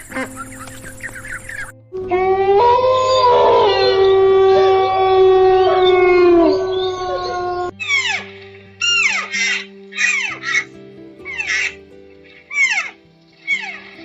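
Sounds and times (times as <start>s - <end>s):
dogs howling: 0.0s - 10.7s.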